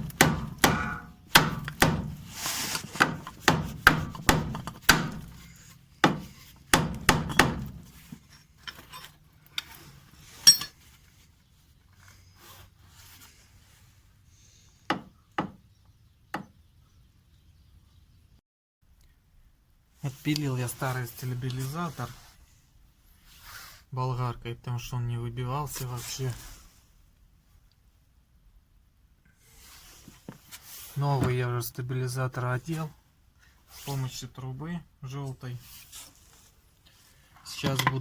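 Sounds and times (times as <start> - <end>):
hammer blows on metal: 0.0 - 2.3.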